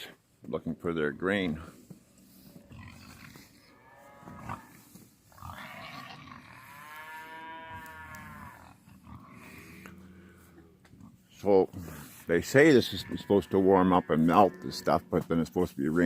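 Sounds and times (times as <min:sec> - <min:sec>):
cattle mooing: 0:02.6 - 0:10.8, 0:12.6 - 0:15.1.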